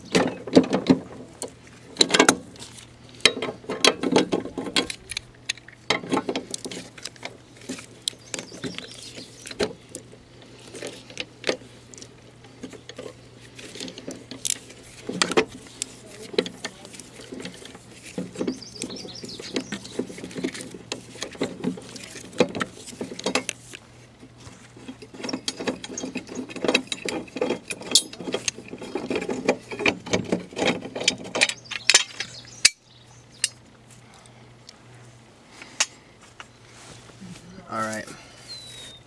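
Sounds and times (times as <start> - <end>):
wrench and metal parts clinking: 25.1 - 30.0.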